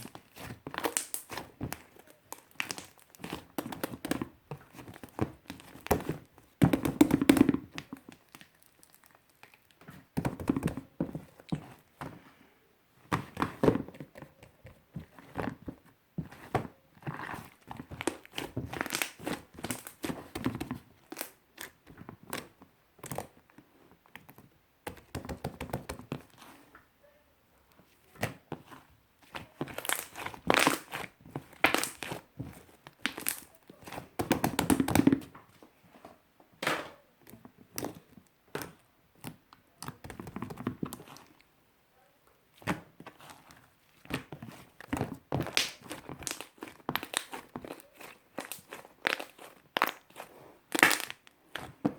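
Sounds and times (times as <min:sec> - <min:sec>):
slime squished by hand: 0:00.0 - 0:12.0, 0:17.0 - 0:23.3, 0:28.2 - 0:35.3, 0:42.5 - 0:51.8.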